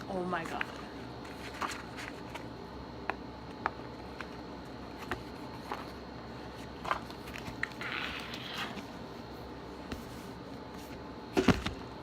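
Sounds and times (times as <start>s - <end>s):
paper rustle: 1.3s - 2.5s.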